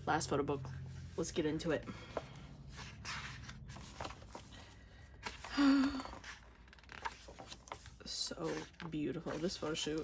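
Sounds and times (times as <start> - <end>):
pages turning: 2.7 - 10.0
paper rustling: 2.7 - 10.0.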